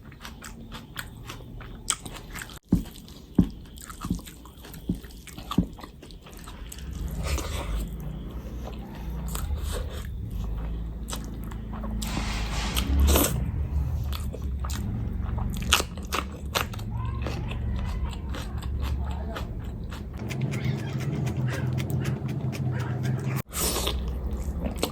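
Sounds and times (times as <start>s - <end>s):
person chewing food: 0.0s - 24.9s
sharp mouth clicks: 18.0s - 24.0s.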